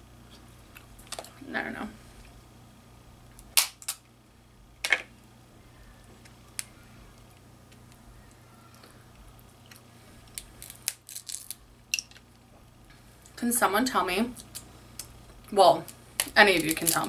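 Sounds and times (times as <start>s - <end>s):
crab shells cracking: 3.4s - 4.1s, 8.8s - 12.4s, 15.9s - 17.0s.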